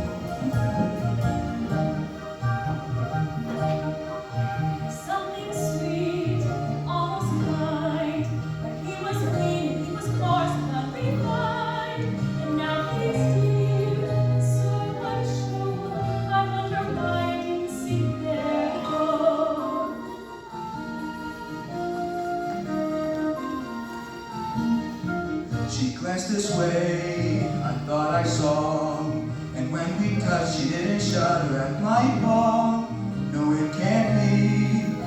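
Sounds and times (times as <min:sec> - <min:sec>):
instrumental accompaniment: 0:00.0 - 0:35.0
choir singing: 0:04.9 - 0:21.0.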